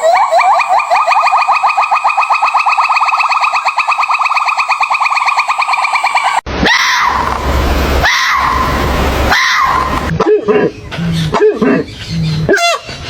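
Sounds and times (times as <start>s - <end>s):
animal pulsing trill: 0.0s - 10.2s
harsh animal calls: 0.0s - 13.0s.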